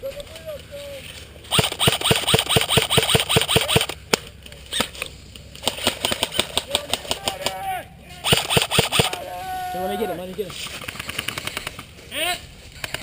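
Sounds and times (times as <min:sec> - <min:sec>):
airsoft gun firing: 0:01.5 - 0:04.2, 0:08.2 - 0:09.2.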